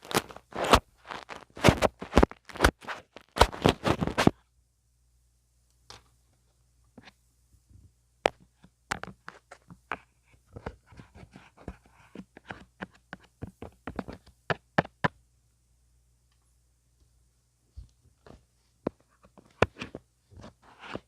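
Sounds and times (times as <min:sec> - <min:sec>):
ear pick scratching a microphone: 0:00.0 - 0:04.3.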